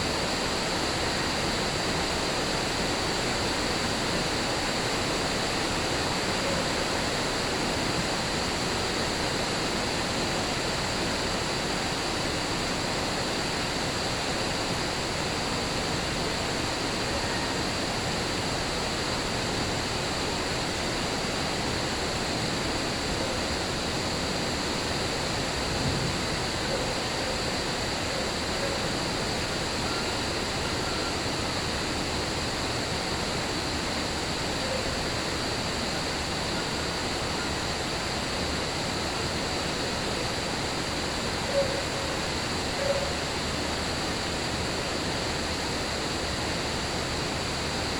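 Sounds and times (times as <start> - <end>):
steady rain: 0.0 - 47.9
cricket trilling: 16.4 - 47.9.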